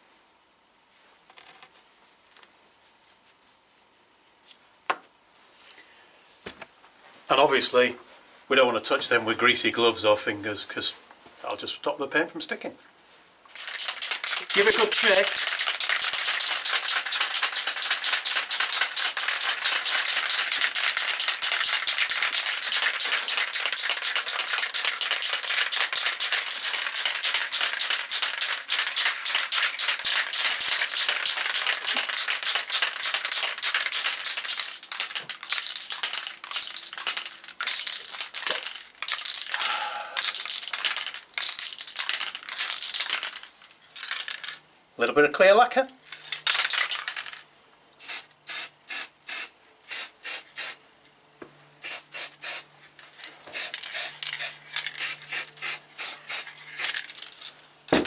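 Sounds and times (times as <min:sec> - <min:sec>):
spray can ball rattling: 0:13.5 - 0:44.6, 0:46.0 - 0:47.4, 0:48.0 - 0:50.8, 0:51.8 - 0:58.0.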